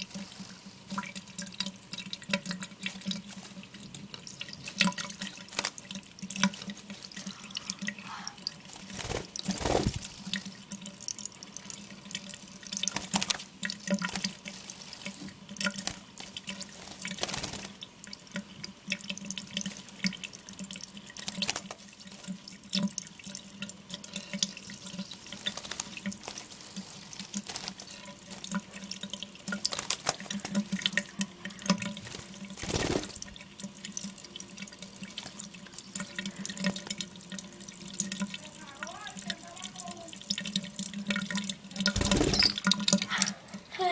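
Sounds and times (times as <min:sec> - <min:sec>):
tap water running into sink: 0:00.9 - 0:43.3
bird splashing in water: 0:08.4 - 0:10.5, 0:12.7 - 0:18.1, 0:24.4 - 0:33.5, 0:41.8 - 0:42.9.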